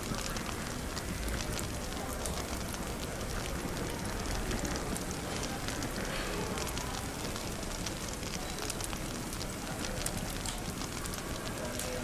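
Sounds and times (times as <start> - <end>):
fireplace crackling: 0.0 - 12.0
low cafe rumble: 0.0 - 12.0.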